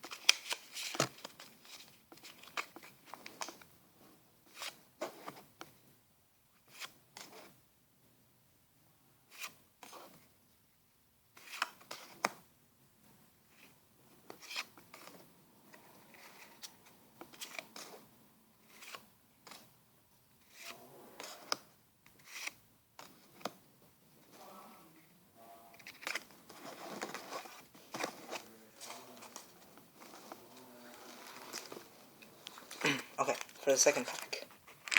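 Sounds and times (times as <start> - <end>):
cards rustling: 0.0 - 3.7, 13.6 - 19.8, 20.4 - 23.6, 25.7 - 34.9.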